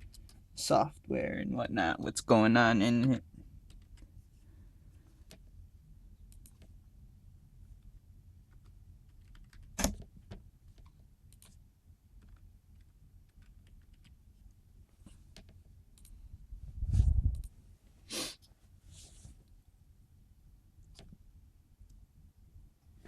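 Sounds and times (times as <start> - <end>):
low steady hum: 0.0 - 23.0
keyboard and mouse clicks: 6.3 - 6.7, 8.5 - 11.6, 12.2 - 14.2, 20.8 - 21.2.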